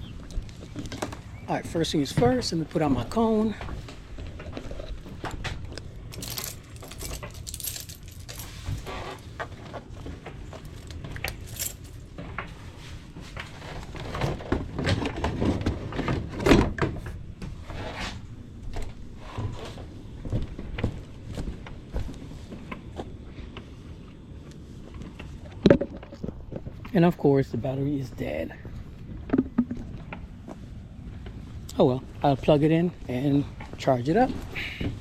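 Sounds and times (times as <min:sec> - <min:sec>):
gear jingling and clinking: 0:06.1 - 0:09.3, 0:10.6 - 0:12.1.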